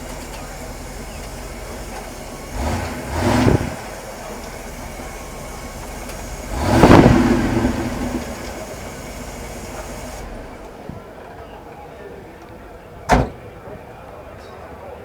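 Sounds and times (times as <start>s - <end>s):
car engine revving: 0.0s - 10.8s
car engine idling: 0.0s - 14.3s.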